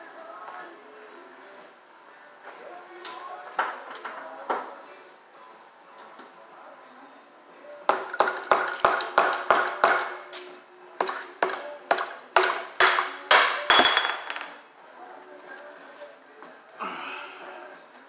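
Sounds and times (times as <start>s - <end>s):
hammer striking metal: 7.9s - 10.2s, 11.0s - 14.5s.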